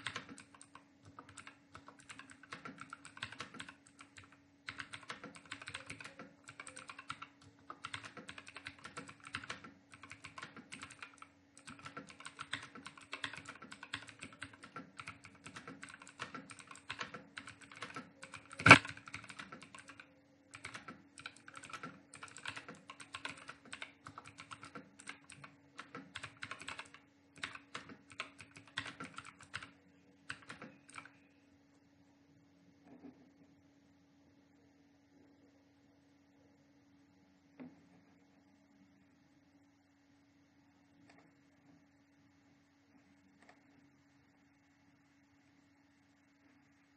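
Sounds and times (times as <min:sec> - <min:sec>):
fast typing on keyboard: 0:00.0 - 0:31.1.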